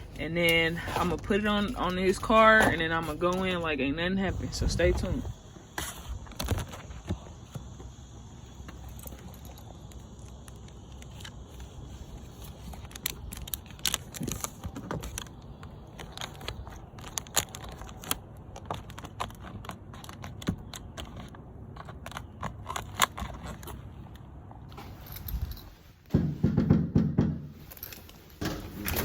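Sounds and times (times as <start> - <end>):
paper and tape crinkling: 0.0 - 3.8, 8.7 - 24.1
steady low rumble: 0.0 - 13.8.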